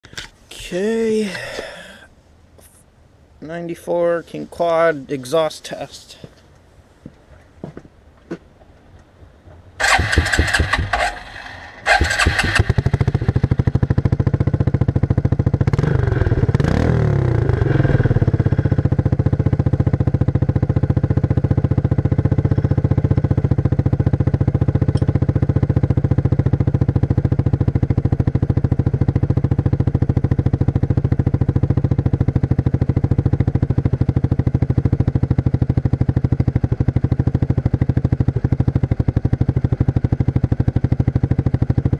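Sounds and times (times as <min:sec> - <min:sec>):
quad bike engine starting and idling: 0:09.8 - 0:41.9.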